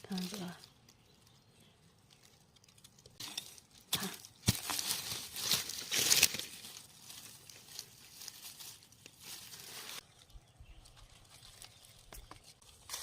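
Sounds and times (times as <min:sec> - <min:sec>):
digging in dry soil and leaves: 0:00.0 - 0:13.0.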